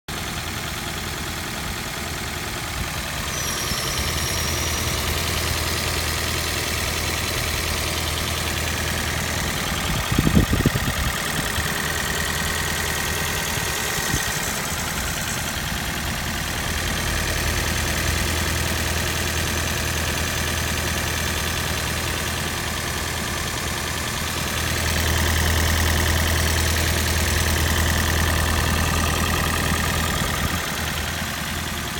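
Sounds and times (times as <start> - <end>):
car engine knocking: 0.1 - 31.9.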